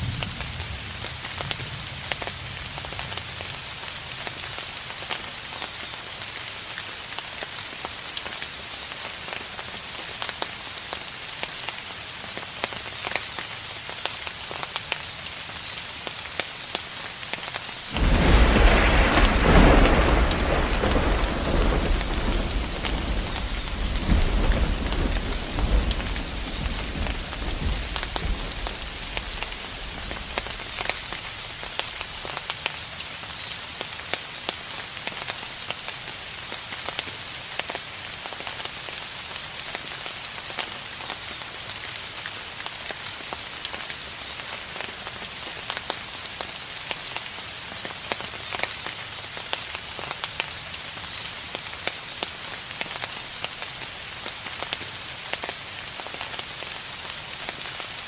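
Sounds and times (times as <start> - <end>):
steady rain falling: 0.0 - 58.0
distant thunder rumbling: 17.9 - 31.1.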